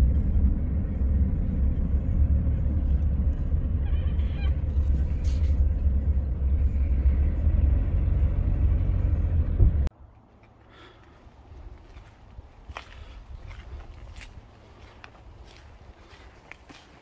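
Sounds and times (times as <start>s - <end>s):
heavy vehicle engine rumbling: 0.0s - 9.9s
short high squeal: 3.7s - 5.6s.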